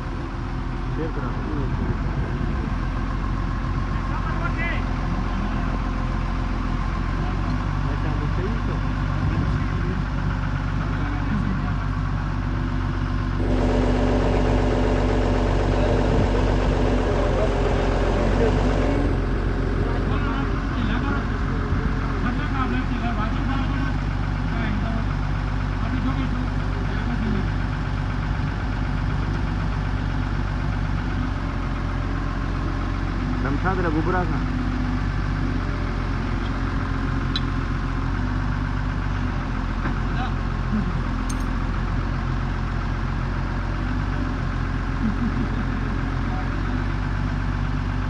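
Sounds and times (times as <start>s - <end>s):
engine idling: 0.0s - 48.0s
steady hum: 13.4s - 22.7s.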